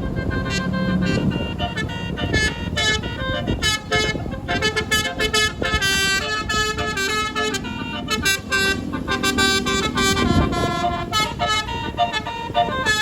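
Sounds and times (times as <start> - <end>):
bus horn playing a tune: 0.0 - 13.0.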